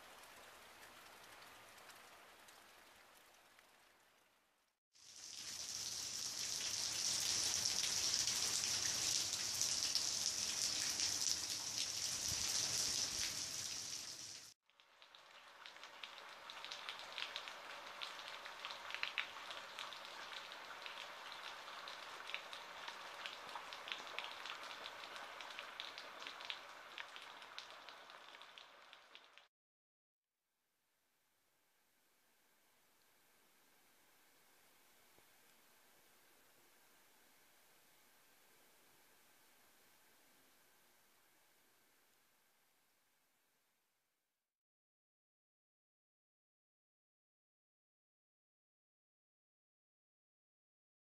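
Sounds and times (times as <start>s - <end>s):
steady dense rain hiss: 0.0s - 4.3s, 5.0s - 14.5s, 15.3s - 29.4s
raindrops ticking: 0.0s - 4.5s, 5.2s - 29.5s.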